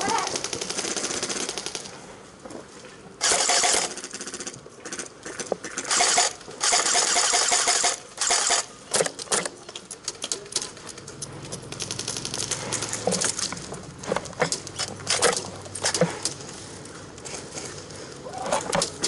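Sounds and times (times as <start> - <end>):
airsoft gun firing full-auto bursts: 0.2 - 1.9, 3.2 - 8.7.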